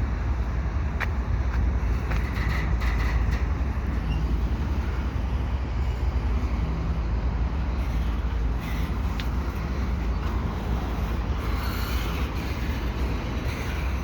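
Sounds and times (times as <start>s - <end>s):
freight train rumbling past: 0.0s - 14.0s
train wheels squeaking and clicking: 1.9s - 5.2s, 7.5s - 14.0s.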